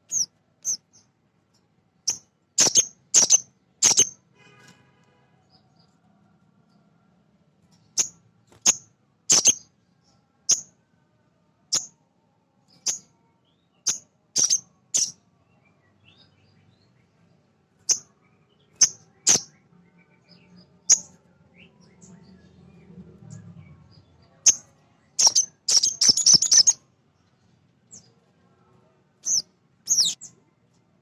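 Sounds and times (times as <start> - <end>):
bird high-pitched calls: 0.0 - 1.0, 2.1 - 4.2, 7.9 - 9.7, 11.7 - 11.9, 12.7 - 13.1, 13.8 - 15.2, 18.7 - 20.1, 20.8 - 21.2, 24.4 - 26.8, 29.2 - 30.3.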